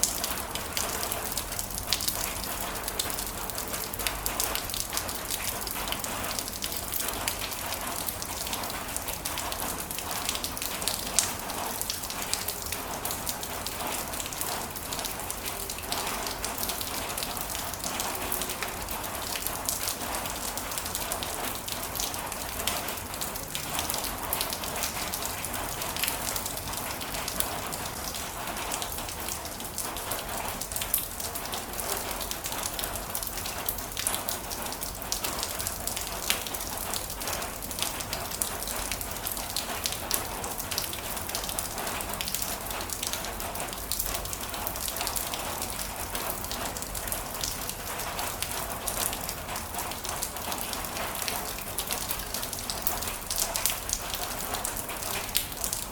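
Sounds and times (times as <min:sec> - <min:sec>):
heavy rain falling: 0:00.0 - 0:55.9.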